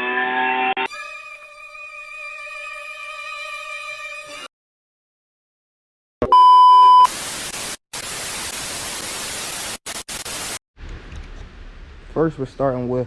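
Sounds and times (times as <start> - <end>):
music: 0.7 - 4.5.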